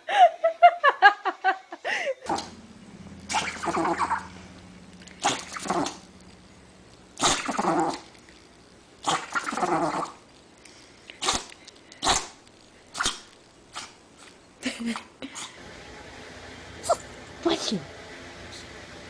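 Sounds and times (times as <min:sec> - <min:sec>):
dog sneezing: 0:11.2 - 0:12.3, 0:16.8 - 0:17.1.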